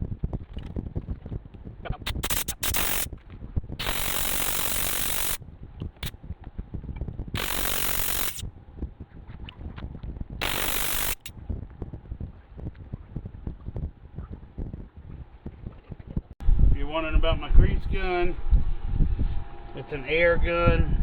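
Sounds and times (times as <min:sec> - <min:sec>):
pneumatic grease gun clatter: 0:02.1 - 0:03.1, 0:03.8 - 0:06.1, 0:07.4 - 0:08.4, 0:10.4 - 0:11.3.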